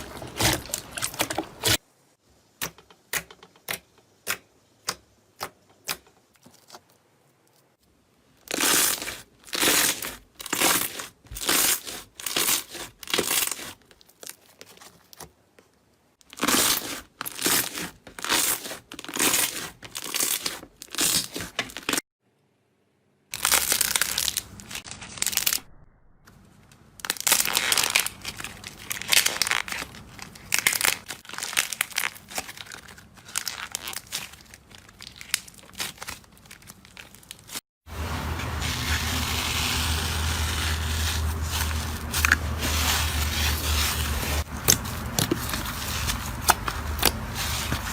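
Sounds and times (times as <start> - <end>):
slime squishing and crackling: 8.4 - 14.9, 16.2 - 22.0, 23.4 - 25.6, 27.0 - 37.6, 38.6 - 47.9.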